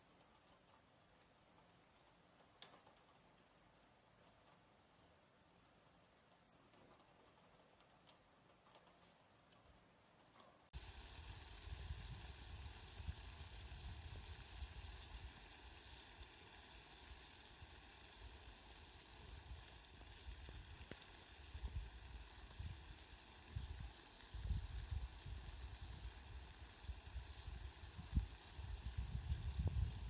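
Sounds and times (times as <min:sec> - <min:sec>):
steady rain: 0:10.8 - 0:30.0.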